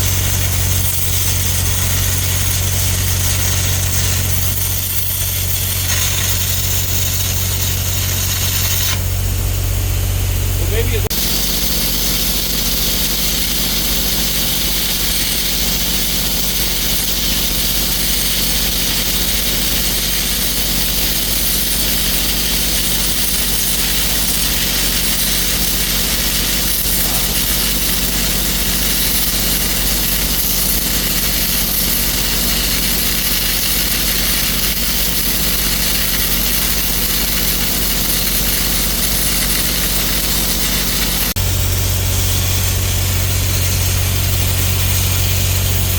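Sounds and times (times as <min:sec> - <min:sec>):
welder engine humming: 0:00.0 - 0:45.9
welding arc crackling hiss: 0:00.0 - 0:45.9.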